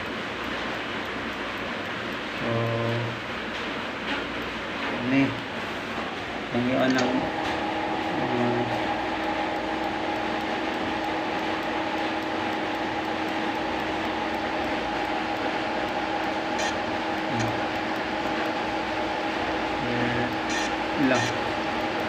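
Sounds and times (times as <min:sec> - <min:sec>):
machine humming: 0:00.0 - 0:22.0
sharp click: 0:16.2 - 0:18.0.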